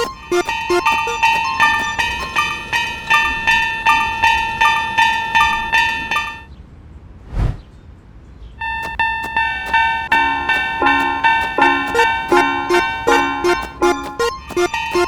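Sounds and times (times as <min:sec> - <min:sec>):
railroad crossing bell clanging: 0:00.0 - 0:06.5, 0:08.6 - 0:15.0
short whoosh: 0:07.2 - 0:07.7.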